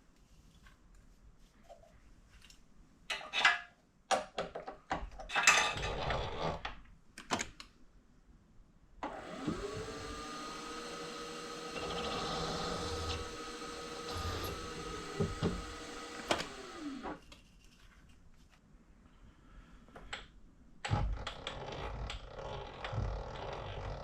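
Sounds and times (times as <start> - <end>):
mill spindle motor whine: 9.1 - 17.2.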